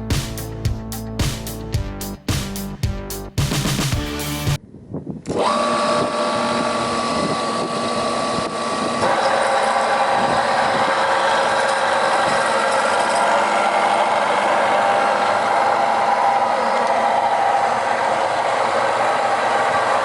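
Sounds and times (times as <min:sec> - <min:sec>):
knife sharpening machine whine: 0:05.4 - 0:20.0.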